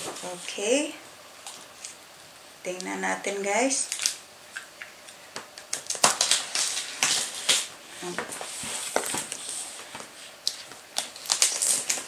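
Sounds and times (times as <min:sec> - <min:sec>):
packaging rustling and crinkling: 0:05.4 - 0:12.0.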